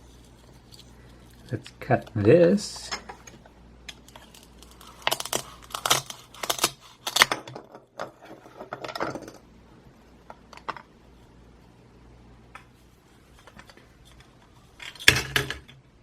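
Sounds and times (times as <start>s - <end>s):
velcro tearing apart: 4.3s - 7.2s.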